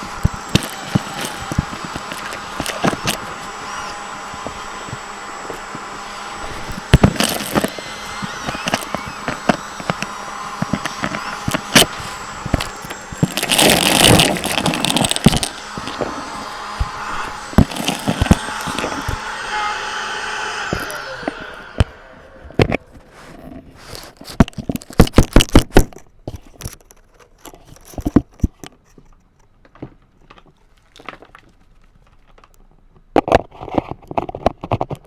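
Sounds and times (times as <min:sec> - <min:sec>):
clicks rattles and scrapes: 0:00.0 - 0:20.0, 0:22.5 - 0:35.0
vacuum cleaner motor whine: 0:00.0 - 0:24.2.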